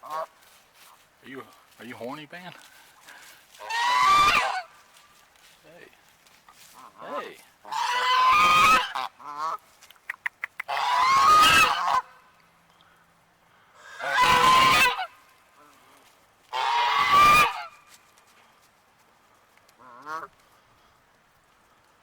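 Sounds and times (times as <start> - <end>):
goose honking: 3.6 - 4.8, 6.7 - 9.6, 10.6 - 12.2, 13.8 - 15.7, 16.5 - 17.8, 19.8 - 20.4.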